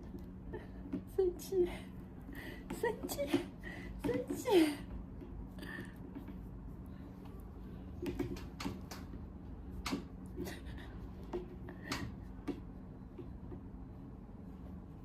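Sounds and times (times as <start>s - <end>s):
low steady hum: 0.0s - 15.0s
light clicks and taps: 7.2s - 10.5s.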